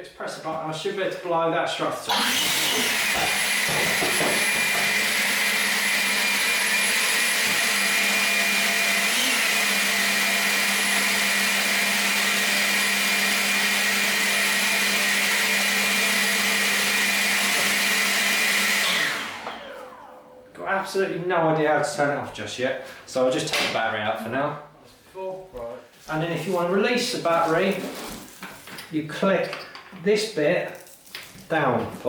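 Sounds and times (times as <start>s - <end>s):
leaf blower running: 2.1s - 20.3s.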